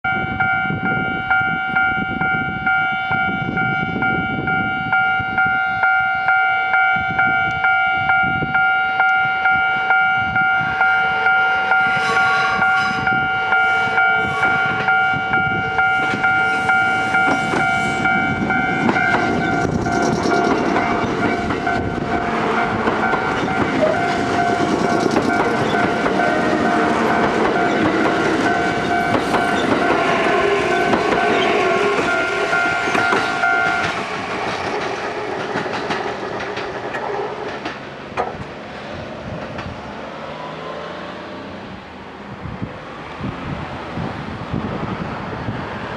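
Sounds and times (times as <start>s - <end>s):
level crossing warning bell: 0.0s - 34.1s
electric train running noise: 0.1s - 45.9s
train wheels clicking on rail joints: 14.5s - 40.0s.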